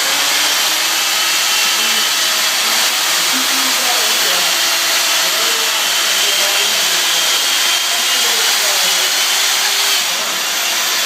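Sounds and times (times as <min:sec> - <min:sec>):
chainsaw cutting ice: 0:00.0 - 0:11.0.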